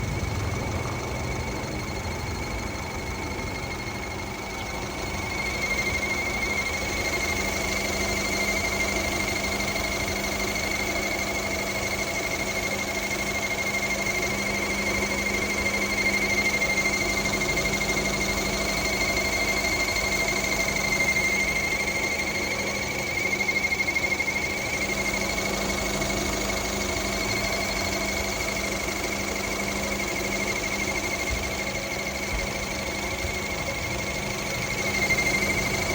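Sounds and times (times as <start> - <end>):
engine idling: 0.0 - 35.9
high-pitched whine: 0.0 - 35.9.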